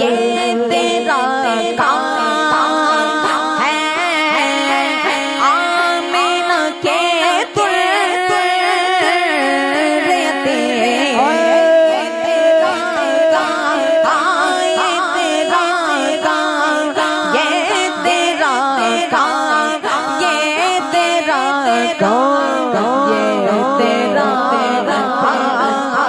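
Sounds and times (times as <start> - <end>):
devotional singing melody: 0.0 - 26.0.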